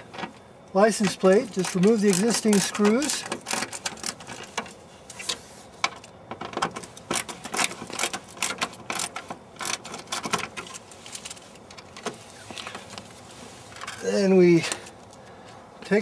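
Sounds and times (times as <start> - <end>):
metallic clicks and scrapes of screws: 1.0 - 13.0.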